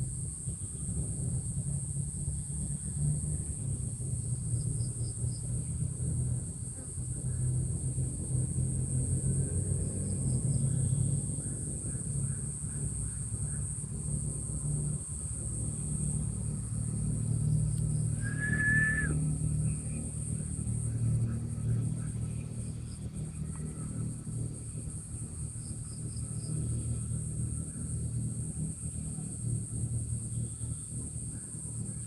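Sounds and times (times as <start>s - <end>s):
insect drone: 0.0s - 32.0s
low rumble: 0.0s - 32.0s
bird chirps: 18.2s - 19.2s
whistled note: 18.2s - 19.3s.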